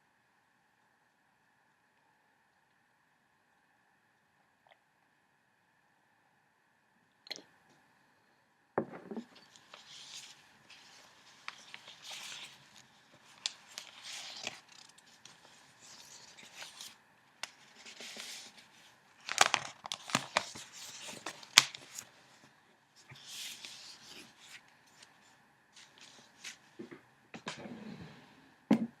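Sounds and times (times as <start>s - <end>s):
paper rustling: 9.3s - 26.7s
crisp paper crackling: 9.4s - 25.2s.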